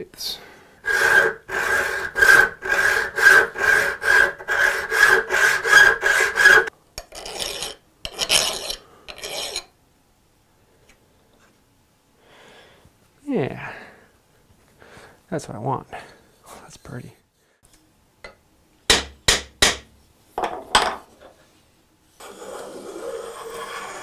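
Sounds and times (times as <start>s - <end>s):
hand saw cutting: 0.8s - 8.8s, 22.2s - 24.0s.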